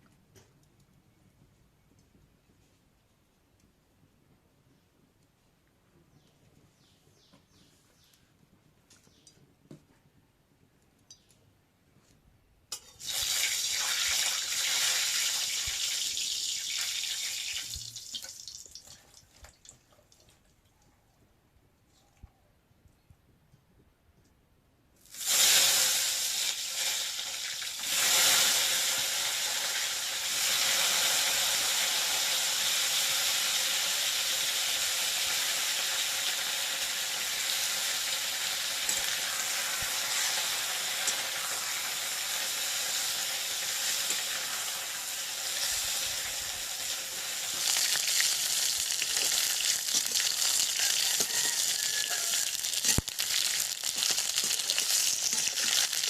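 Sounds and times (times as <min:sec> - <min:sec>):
food sizzling in hot oil: 0:12.8 - 0:19.0, 0:25.0 - 0:56.0.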